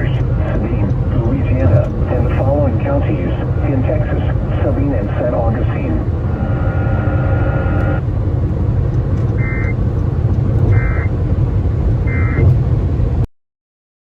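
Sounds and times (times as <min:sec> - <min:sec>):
low vehicle rumble: 0:00.0 - 0:13.3
digital data burst tones: 0:10.8 - 0:11.1, 0:12.1 - 0:12.4.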